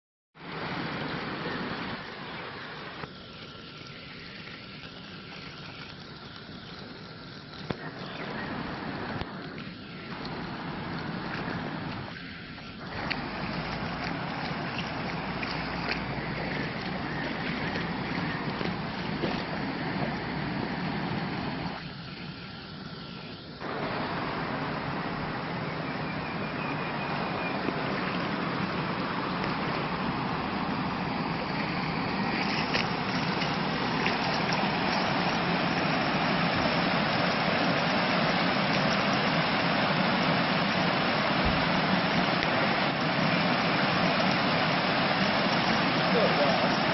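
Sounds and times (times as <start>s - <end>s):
floodwater rushing: 0.4s - 46.9s.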